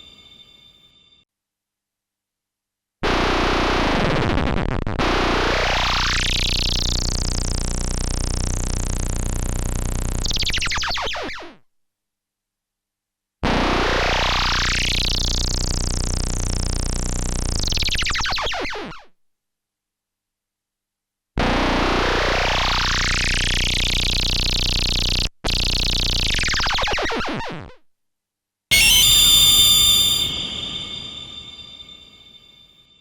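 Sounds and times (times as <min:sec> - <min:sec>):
synthesizer pitch sweeping upward: 0:28.7 - 0:32.4.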